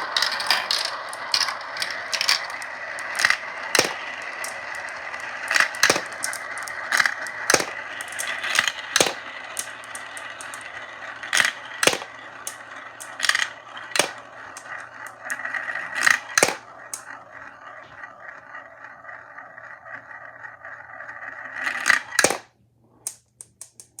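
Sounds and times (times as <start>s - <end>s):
balls clacking on track: 0.0s - 24.0s
balls rolling on track: 0.0s - 24.0s.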